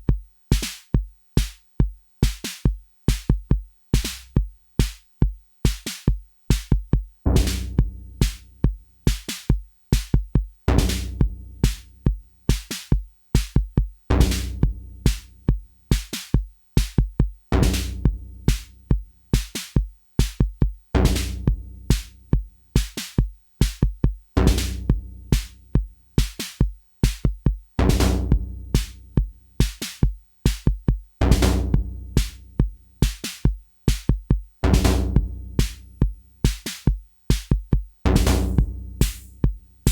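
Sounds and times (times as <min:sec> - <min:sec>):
electronic drum machine rhythm: 0:26.2 - 0:39.9.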